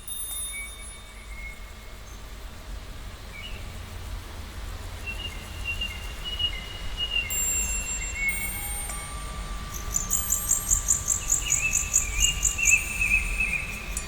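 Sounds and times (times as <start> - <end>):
steady low rumble: 1.6 - 14.0
birds whistling: 5.8 - 14.0.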